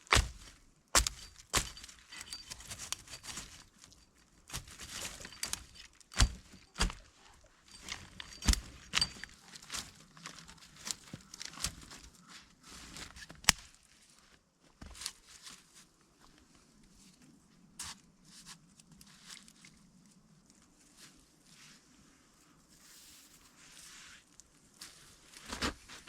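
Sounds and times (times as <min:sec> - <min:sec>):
rustling and crunching in snow: 0:00.0 - 0:26.0
twigs snapping: 0:00.1 - 0:12.2, 0:13.0 - 0:13.8.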